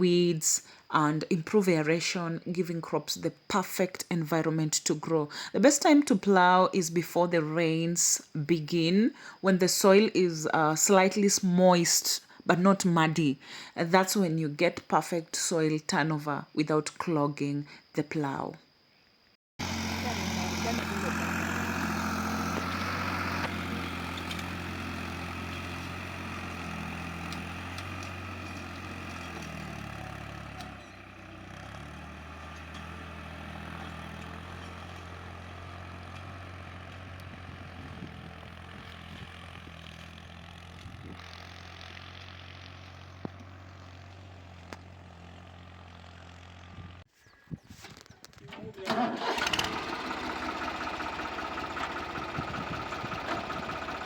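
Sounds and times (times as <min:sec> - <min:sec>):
tractor engine running: 0:19.6 - 0:47.1, 0:48.5 - 0:54.0.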